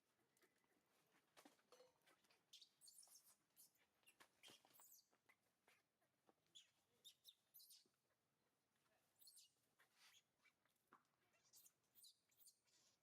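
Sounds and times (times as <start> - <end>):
small animal chirping: 1.7 - 5.8, 6.5 - 8.0, 9.2 - 10.6, 11.3 - 13.0.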